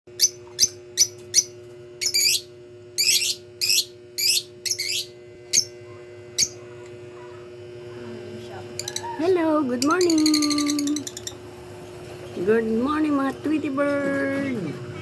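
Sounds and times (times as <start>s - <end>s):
lovebirds chirping: 0.2s - 5.8s, 8.8s - 12.8s
lovebirds warbled calls: 0.2s - 5.8s, 6.4s - 6.9s, 8.8s - 12.8s.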